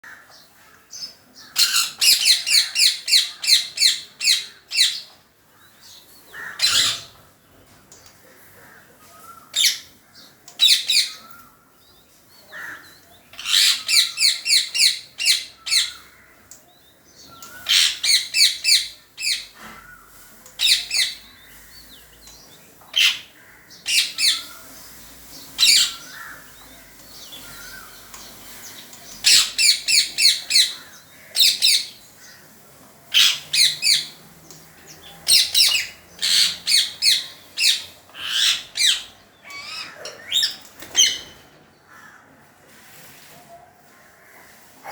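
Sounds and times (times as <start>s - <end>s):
parrot squawking: 6.4s - 7.1s, 13.4s - 16.0s, 25.6s - 26.5s.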